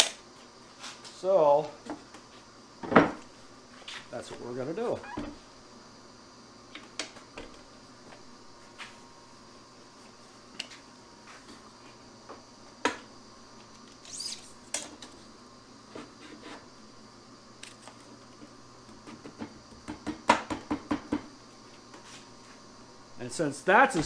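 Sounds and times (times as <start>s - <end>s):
short squeak: 14.0s - 14.5s.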